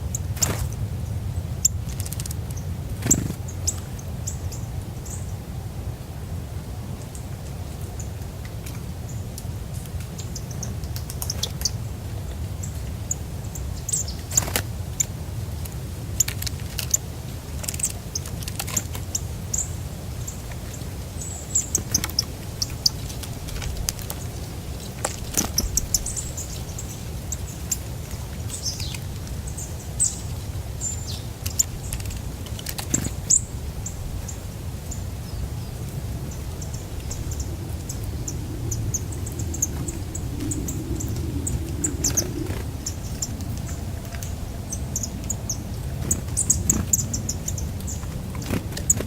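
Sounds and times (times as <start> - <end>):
songbirds chirping: 0.0 - 49.0
steady low rumble: 0.0 - 49.0.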